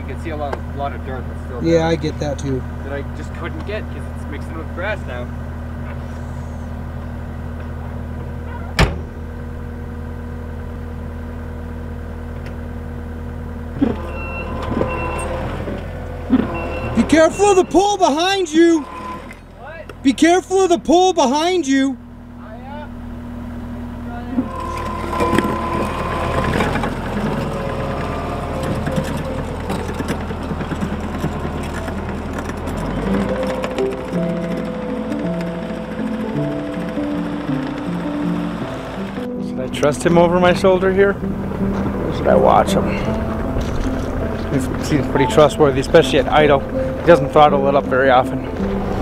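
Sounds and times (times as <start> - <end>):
skid steer engine running: 0.0 - 49.0
short high beeps: 14.0 - 15.4, 16.5 - 19.5
music: 16.5 - 19.3, 24.4 - 49.0
knocks and clatter: 24.4 - 39.4, 40.6 - 49.0.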